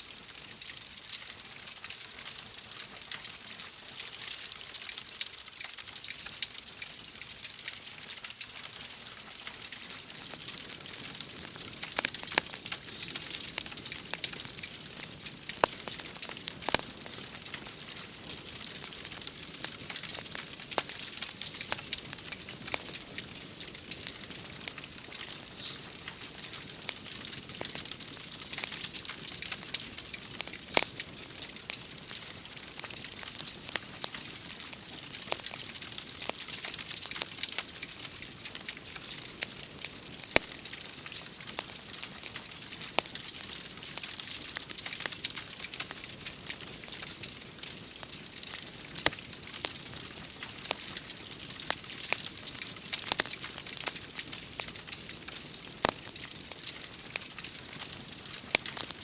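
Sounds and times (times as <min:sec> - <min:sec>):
wood fire crackling and popping: 0:00.0 - 0:59.0
rain hissing: 0:08.6 - 0:47.1.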